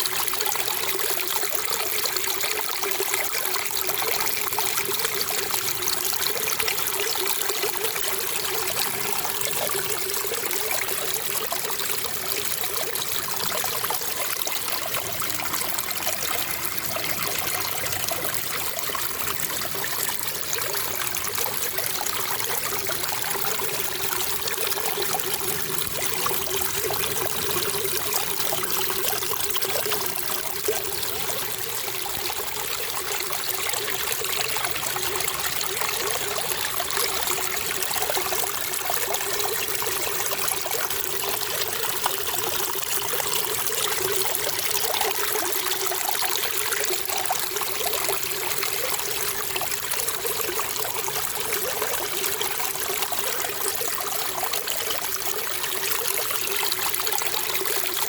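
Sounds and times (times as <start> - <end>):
water trickling: 0.0 - 58.0.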